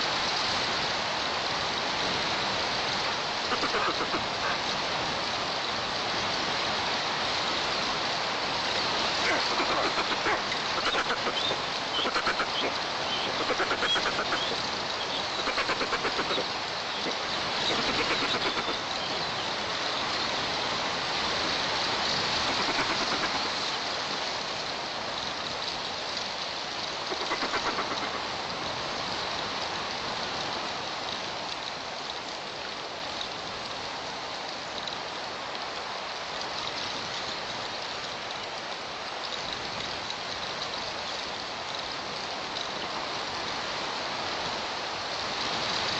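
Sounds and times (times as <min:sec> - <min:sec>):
rapid pulsed bird calls: 0:03.5 - 0:04.6, 0:09.2 - 0:19.7, 0:22.3 - 0:23.8, 0:27.0 - 0:28.4.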